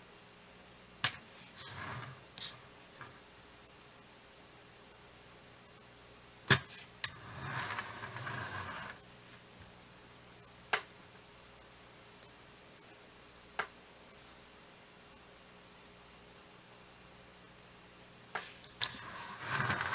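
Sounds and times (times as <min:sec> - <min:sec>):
rustling scrape: 0:01.2 - 0:03.2, 0:06.7 - 0:09.4, 0:18.4 - 0:19.9.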